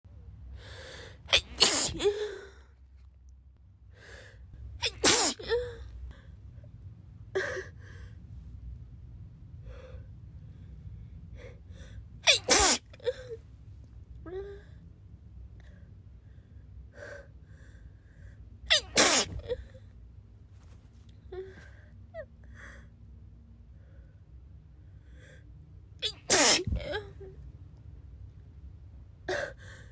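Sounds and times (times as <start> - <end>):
person sneezing: 1.3 - 2.4, 4.8 - 5.8, 12.3 - 13.0, 18.7 - 19.7, 26.0 - 27.0.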